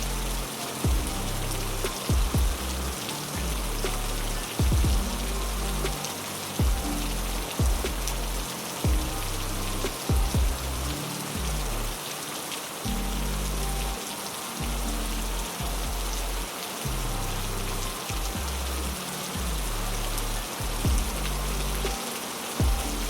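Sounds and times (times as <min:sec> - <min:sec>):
heavy rain falling: 0:00.0 - 0:23.0
low bass background music: 0:00.0 - 0:23.0
sharp low knocks: 0:00.9 - 0:01.2, 0:01.8 - 0:02.8, 0:04.6 - 0:05.2, 0:06.6 - 0:07.0, 0:07.6 - 0:09.2, 0:09.8 - 0:10.8, 0:20.9 - 0:21.2.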